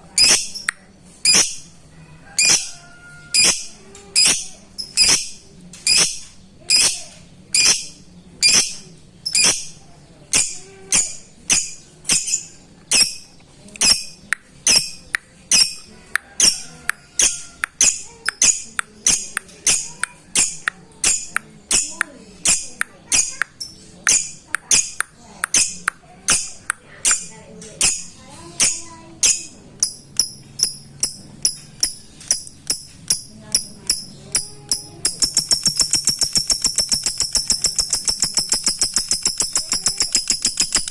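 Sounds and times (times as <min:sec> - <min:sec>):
lovebird chirping: 0:00.1 - 0:01.7, 0:02.3 - 0:40.9.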